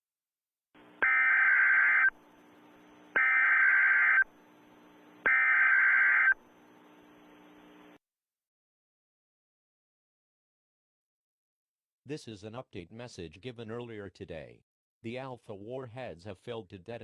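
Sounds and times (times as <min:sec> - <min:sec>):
faint hum: 0:00.8 - 0:08.0
warbling digital data tones: 0:01.0 - 0:02.1, 0:03.2 - 0:04.3, 0:05.3 - 0:06.4.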